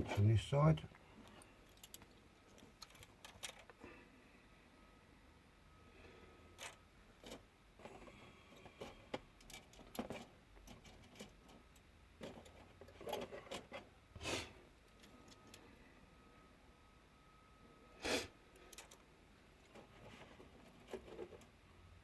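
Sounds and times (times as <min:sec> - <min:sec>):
plastic pieces clicking and rustling: 0:01.3 - 0:03.8.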